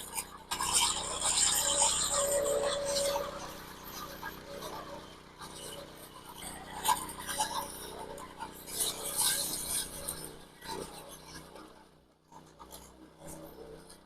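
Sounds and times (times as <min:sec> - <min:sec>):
tools scraping wet concrete: 0:00.0 - 0:05.1.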